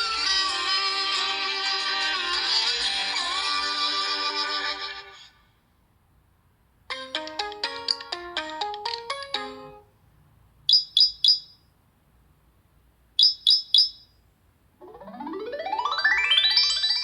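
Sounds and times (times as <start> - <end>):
stepping electronic melody: 6.9 - 9.9, 14.8 - 17.0
quick high chirps: 10.7 - 11.6, 13.2 - 14.2
rising sweep of notes: 14.8 - 17.0.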